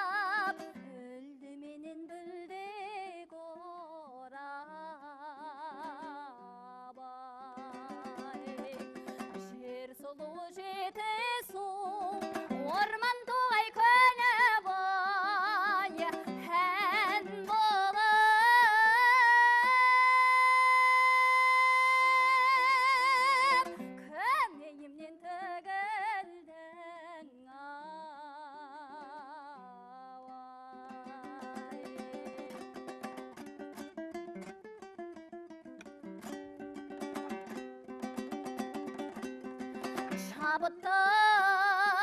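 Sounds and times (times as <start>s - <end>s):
plucked string accompaniment: 0.0s - 1.2s, 7.4s - 24.7s, 30.7s - 42.0s
woman singing with vibrato: 0.0s - 33.0s, 40.0s - 42.0s.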